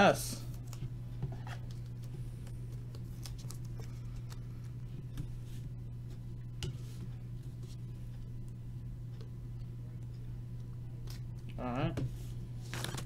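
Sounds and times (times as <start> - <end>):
low electrical hum: 0.0 - 13.0
cards being flipped by hand: 1.4 - 5.6, 12.6 - 13.0.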